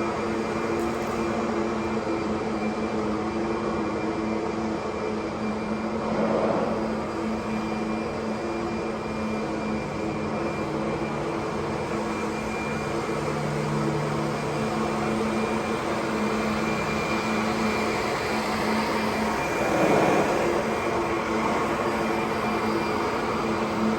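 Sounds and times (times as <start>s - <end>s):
vacuum cleaner running: 10.6s - 23.9s.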